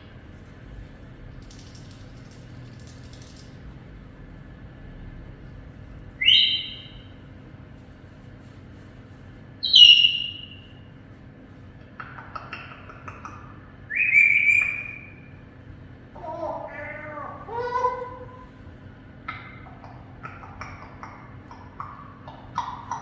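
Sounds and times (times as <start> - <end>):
parrot chattering: 6.2 - 7.0, 9.6 - 10.6, 12.0 - 15.3, 16.2 - 18.6, 19.3 - 23.0
parrot whistling: 6.2 - 7.0, 9.6 - 10.6, 13.9 - 15.3.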